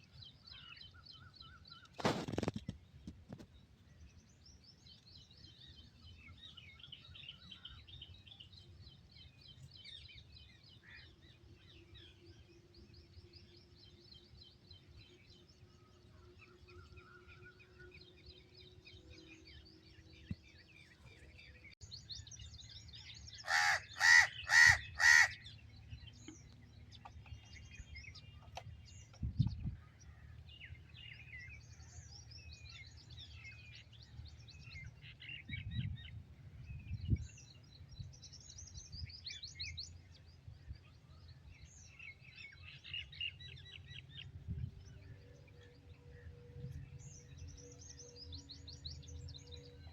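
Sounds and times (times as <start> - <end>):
small birds chirping: 0.0 - 49.9
crow cawing: 23.4 - 25.4.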